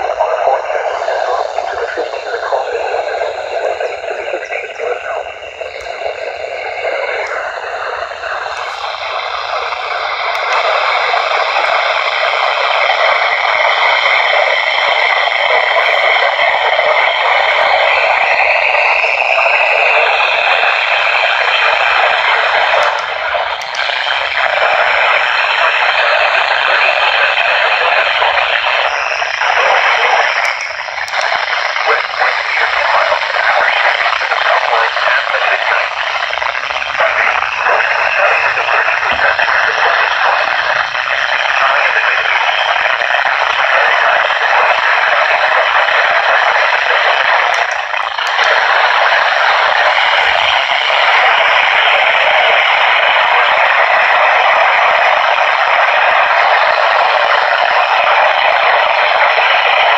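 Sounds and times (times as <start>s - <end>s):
radio static hiss: 0.0s - 59.9s.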